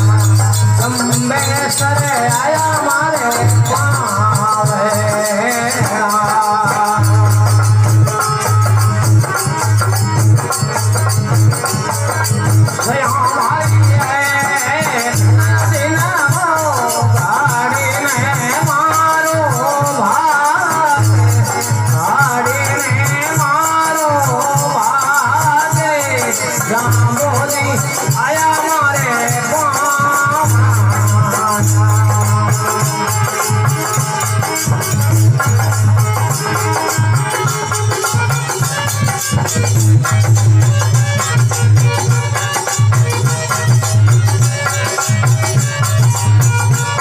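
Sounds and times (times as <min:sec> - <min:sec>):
low drum beat: 0:00.0 - 0:06.0
shaker jingling: 0:00.0 - 0:47.0.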